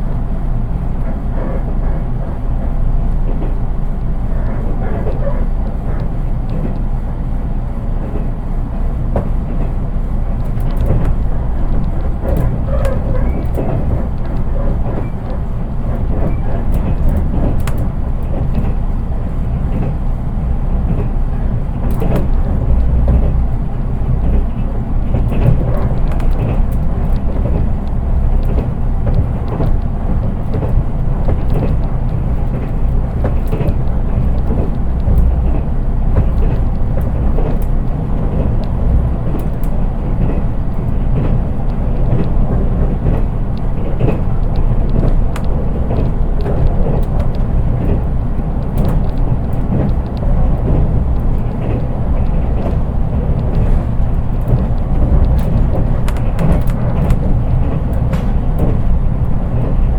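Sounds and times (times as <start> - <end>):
train wheels rumbling on rail: 0.0 - 59.9.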